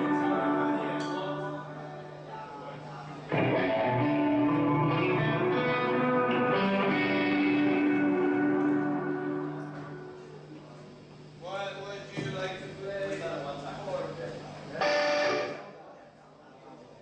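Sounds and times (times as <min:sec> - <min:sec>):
electric guitar playing: 0:00.0 - 0:01.9, 0:03.3 - 0:10.4, 0:14.8 - 0:15.7.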